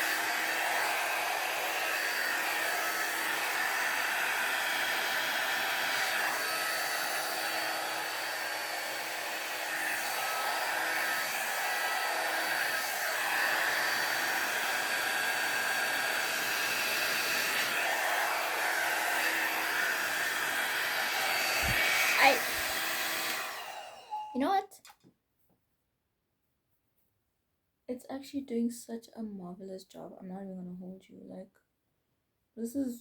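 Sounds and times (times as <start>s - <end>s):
hair dryer running: 0.0s - 24.6s.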